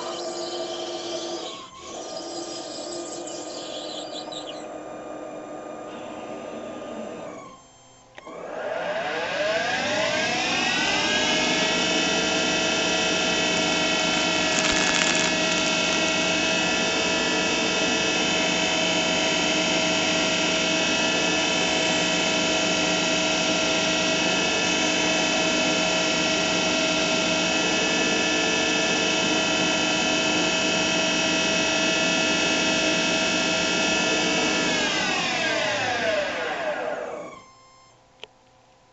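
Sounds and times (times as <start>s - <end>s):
spindle motor whine: 0.0s - 25.4s, 33.0s - 38.0s.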